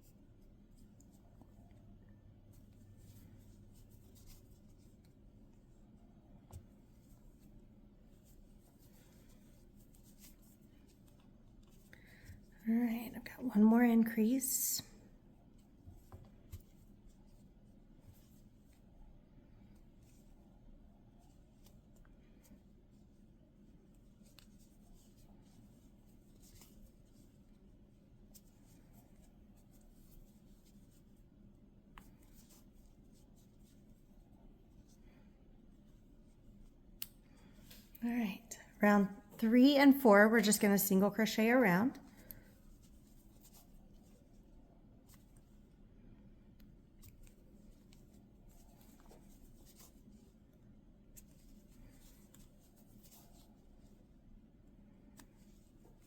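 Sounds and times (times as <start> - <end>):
yarn rustling through crochet hook: 0.0 - 45.8, 46.6 - 56.0.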